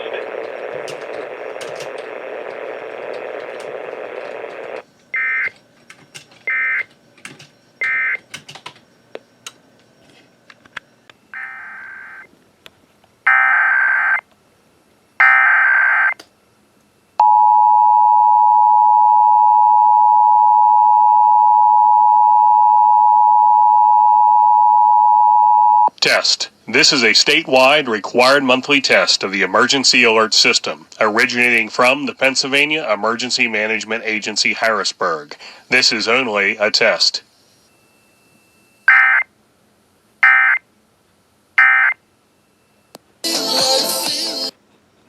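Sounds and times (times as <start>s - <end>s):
radio hiss: 0.0s - 4.8s, 26.0s - 37.7s
digital data bursts: 0.0s - 5.5s.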